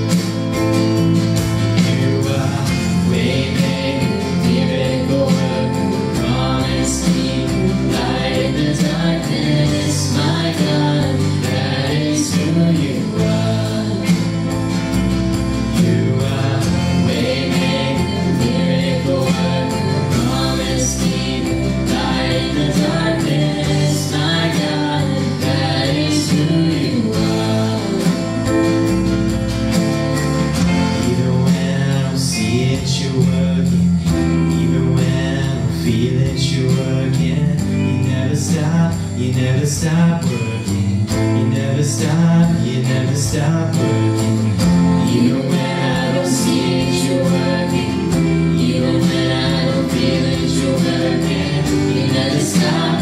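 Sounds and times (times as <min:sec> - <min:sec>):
band playing gospel song: 0:00.0 - 0:53.0
person singing: 0:01.8 - 0:14.7, 0:15.7 - 0:28.9, 0:30.6 - 0:44.1, 0:44.9 - 0:53.0.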